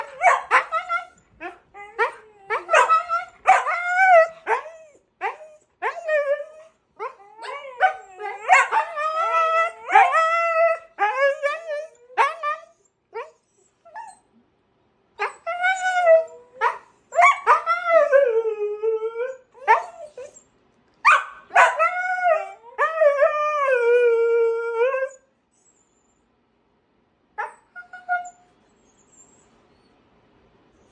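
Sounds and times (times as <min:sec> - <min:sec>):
dog yipping: 0:00.0 - 0:01.1, 0:02.0 - 0:06.1, 0:07.4 - 0:10.3, 0:19.6 - 0:20.4, 0:21.0 - 0:22.6, 0:27.4 - 0:29.4
dogs howling: 0:00.0 - 0:13.3, 0:21.5 - 0:25.2.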